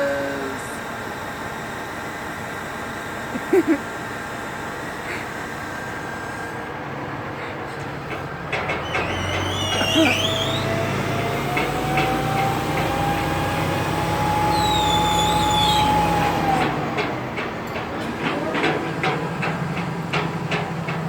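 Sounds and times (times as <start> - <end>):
crane whine: 0.0 - 21.0
truck engine hum: 0.0 - 21.0
birds chirping: 8.8 - 10.8, 14.5 - 16.1.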